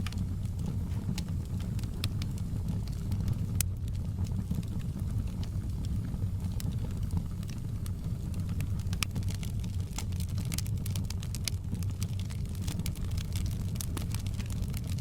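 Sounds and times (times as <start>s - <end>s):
steady low rumble: 0.0s - 10.6s
log fire crackling: 0.0s - 15.0s
sharp fire pops: 0.0s - 15.0s.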